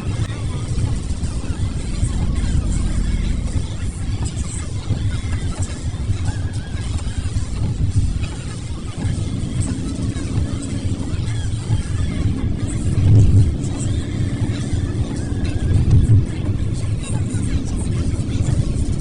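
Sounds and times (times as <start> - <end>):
car interior road and engine rumble: 0.0 - 19.0.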